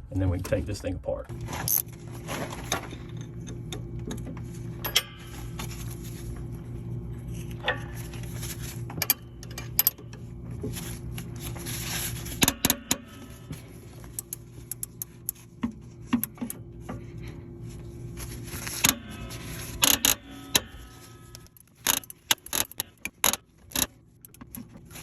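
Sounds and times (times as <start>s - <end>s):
steady low hum: 0.0s - 25.0s
wrench clicking on metal bolt: 21.6s - 24.5s.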